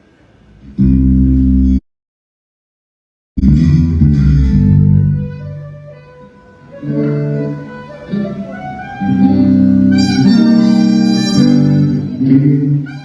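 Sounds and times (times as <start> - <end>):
instrumental music with sustained notes: 3.4 - 13.0.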